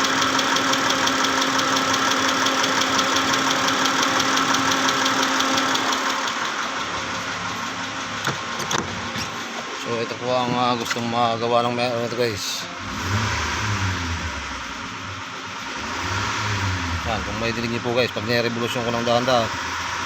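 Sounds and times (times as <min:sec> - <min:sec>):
engine running with knocking: 0:00.0 - 0:11.2.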